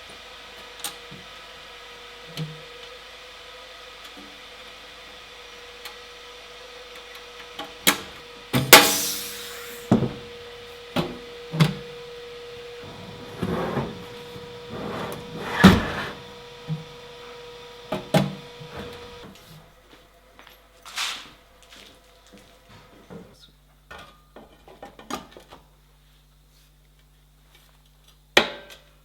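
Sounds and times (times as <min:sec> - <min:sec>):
scraping rasp: 0:12.8 - 0:16.4
objects knocking and clunking: 0:12.8 - 0:16.9.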